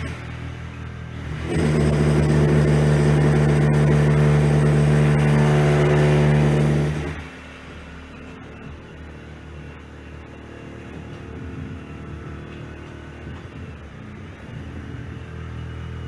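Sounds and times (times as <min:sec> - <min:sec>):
electric power tool motor: 0:01.2 - 0:07.3.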